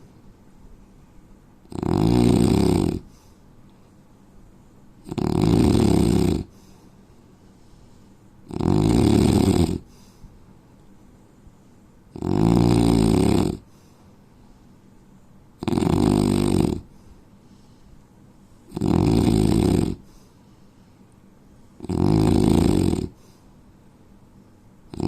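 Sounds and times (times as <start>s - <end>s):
man snoring: 1.7s - 3.1s, 5.0s - 6.5s, 8.5s - 9.9s, 12.2s - 13.7s, 15.6s - 16.9s, 18.7s - 20.1s, 21.8s - 23.2s.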